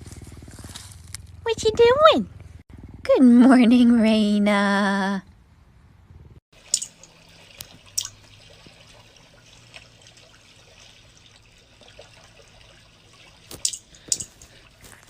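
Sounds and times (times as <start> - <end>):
faint trickling water: 6.6 - 15.0.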